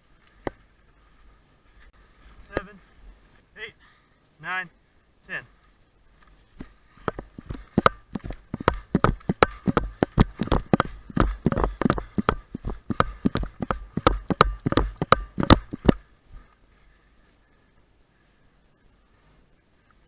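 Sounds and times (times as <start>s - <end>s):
running footsteps: 6.2s - 16.6s.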